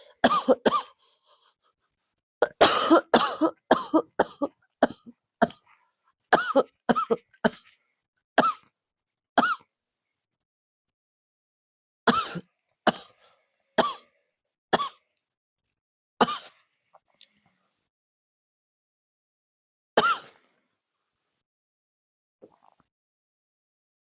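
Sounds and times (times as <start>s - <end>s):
person coughing: 0.1s - 1.0s, 2.4s - 5.6s, 6.3s - 7.7s, 12.1s - 13.2s, 20.0s - 20.4s.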